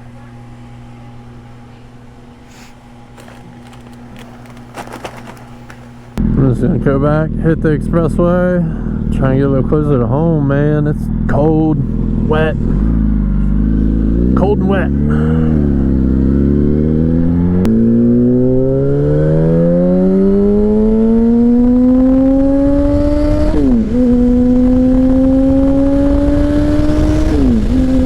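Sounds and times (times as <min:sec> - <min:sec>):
motorcycle engine accelerating: 0:02.5 - 0:28.0.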